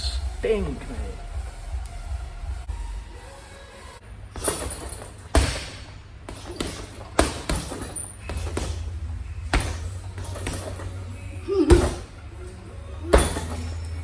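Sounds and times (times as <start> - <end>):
gloves punching heavy bag: 4.3 - 12.2, 13.0 - 14.0.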